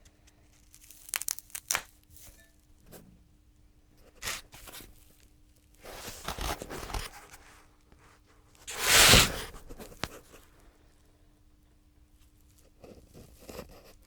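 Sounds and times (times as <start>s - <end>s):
rustling and crinkling handling: 0.0s - 3.1s, 3.9s - 10.6s.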